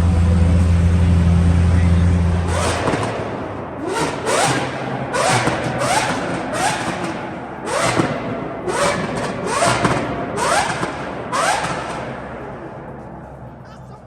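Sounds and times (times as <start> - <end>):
sports car engine revving: 0.0 - 13.6.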